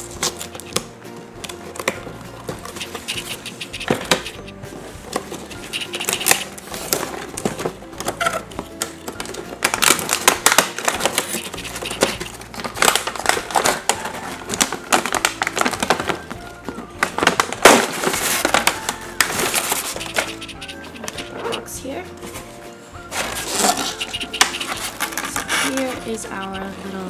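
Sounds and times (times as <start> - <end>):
plastic packaging clicking and crinkling: 0.0 - 4.5, 5.1 - 21.3, 23.1 - 26.8
background music: 0.0 - 27.0.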